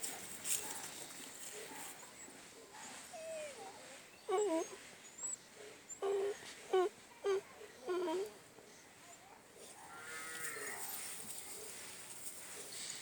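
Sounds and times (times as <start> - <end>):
puppies whining: 4.3 - 5.4, 6.0 - 8.3.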